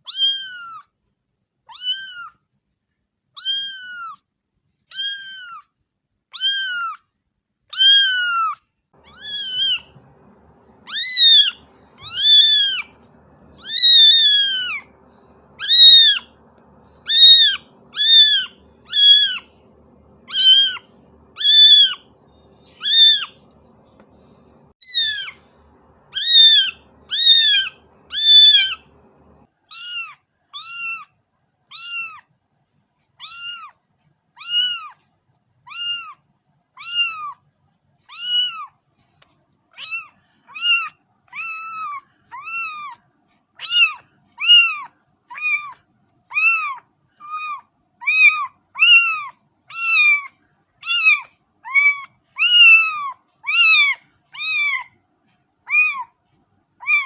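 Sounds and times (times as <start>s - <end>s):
cat meowing: 0.0s - 0.8s, 1.7s - 2.3s, 4.9s - 5.6s, 6.3s - 7.0s, 7.7s - 31.1s, 31.7s - 32.2s, 33.2s - 33.7s, 34.4s - 35.0s, 35.7s - 36.2s, 36.8s - 37.4s, 38.1s - 38.7s, 39.8s - 43.0s, 43.6s - 54.9s, 55.7s - 56.1s.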